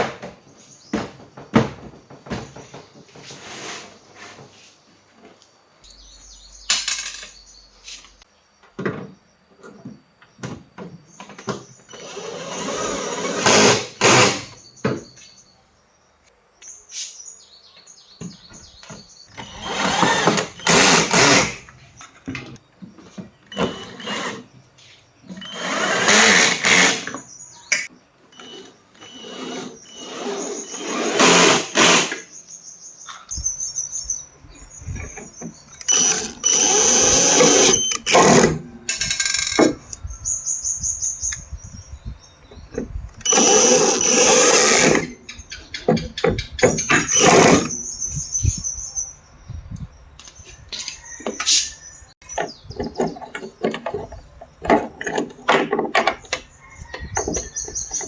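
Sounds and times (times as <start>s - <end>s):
power drill running in bursts: 12.0s - 14.6s, 19.4s - 21.6s, 25.4s - 27.2s, 28.4s - 32.2s, 35.8s - 38.6s, 43.2s - 45.2s, 47.1s - 47.7s.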